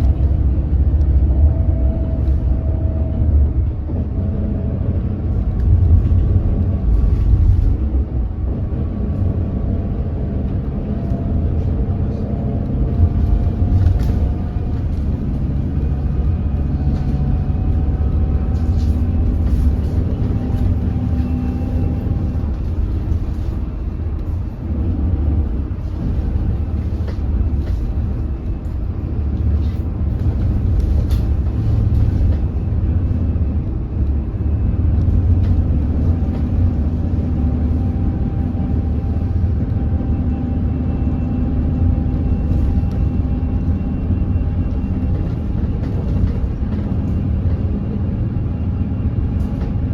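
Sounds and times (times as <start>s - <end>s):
bus road rumble: 0.0s - 49.9s.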